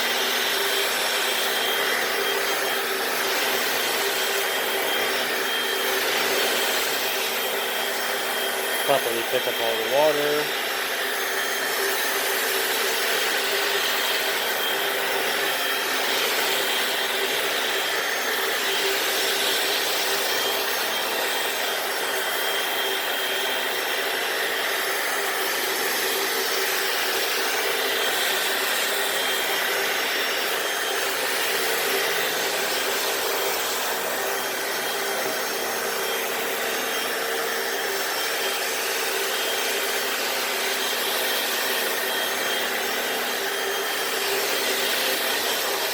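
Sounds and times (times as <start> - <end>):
wet floor cleaner running: 0.0 - 45.9.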